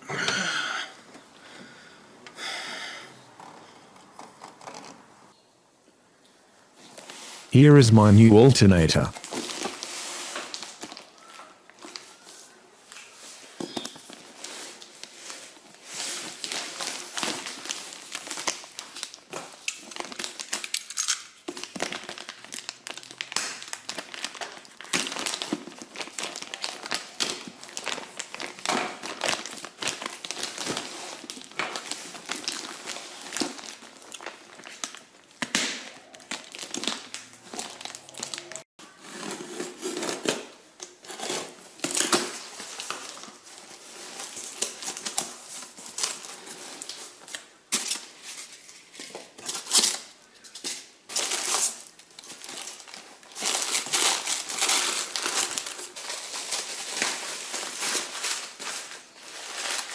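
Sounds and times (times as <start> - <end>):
packaging crinkling: 16.3 - 35.4, 41.2 - 59.9.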